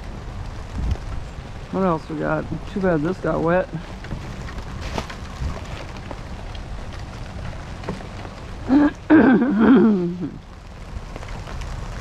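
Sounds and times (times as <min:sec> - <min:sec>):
steady rain falling: 0:00.0 - 0:12.0
person's voice: 0:01.7 - 0:03.9, 0:08.7 - 0:10.4.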